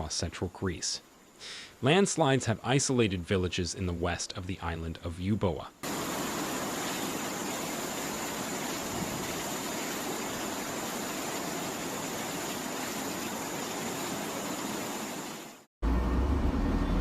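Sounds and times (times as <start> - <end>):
water rushing: 5.8 - 15.7.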